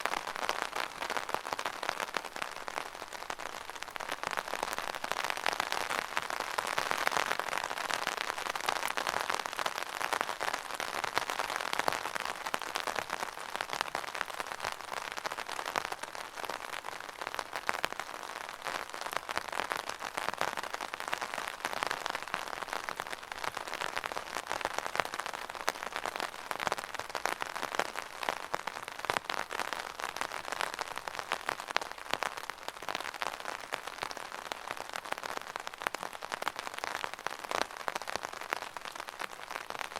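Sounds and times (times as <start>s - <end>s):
rain pattering on umbrella: 0.0s - 39.9s.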